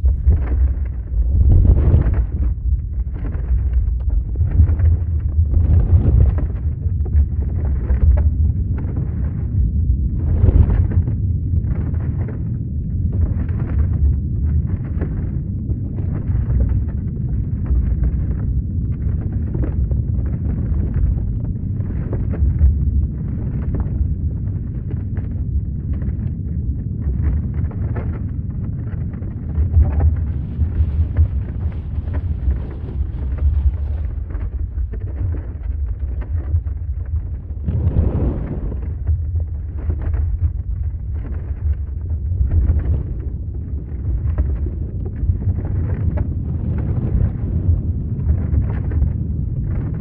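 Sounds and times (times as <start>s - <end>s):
deep earthquake rumble: 0.0s - 50.0s
gritty crackling: 0.0s - 50.0s.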